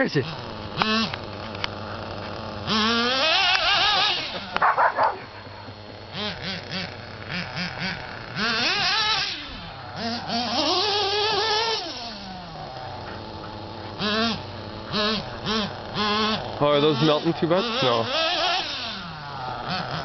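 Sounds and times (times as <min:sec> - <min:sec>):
toy car electric motor whining: 0:00.0 - 0:20.0
dog barking and yelping: 0:04.5 - 0:05.7.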